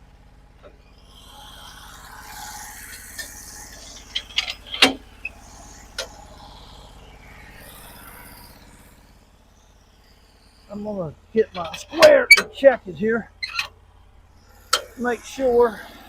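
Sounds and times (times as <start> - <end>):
sawmill engine running: 0.0 - 16.0
rushing hiss: 1.2 - 9.1.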